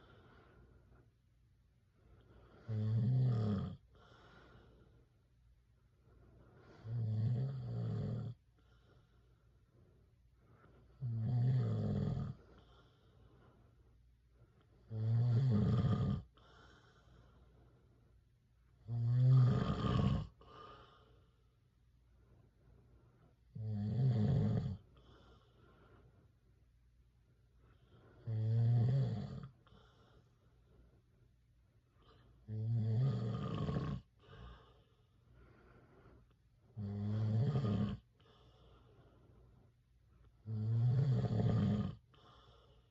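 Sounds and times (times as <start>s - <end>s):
soft breath: 0.0s - 2.9s, 3.8s - 7.0s, 8.3s - 11.1s, 12.1s - 14.9s, 16.2s - 18.8s, 20.3s - 23.5s, 24.8s - 28.3s, 29.5s - 32.5s, 34.0s - 36.8s, 38.0s - 40.4s, 42.0s - 42.9s
man snoring: 2.7s - 3.8s, 6.8s - 8.4s, 11.0s - 12.4s, 14.9s - 16.3s, 18.8s - 20.6s, 23.6s - 24.8s, 28.2s - 29.5s, 32.5s - 34.1s, 36.8s - 38.0s, 40.5s - 42.1s.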